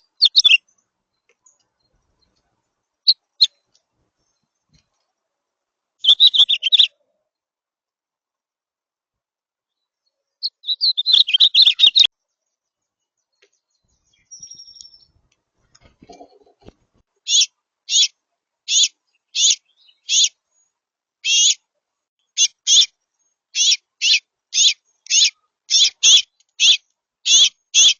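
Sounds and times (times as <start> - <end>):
bird twittering: 0.0 - 0.6, 6.0 - 7.0, 10.4 - 12.1, 13.8 - 15.2, 17.3 - 18.1, 18.7 - 20.4, 21.2 - 21.6, 22.4 - 22.9, 23.6 - 27.9
repeated high bird notes: 6.0 - 6.9.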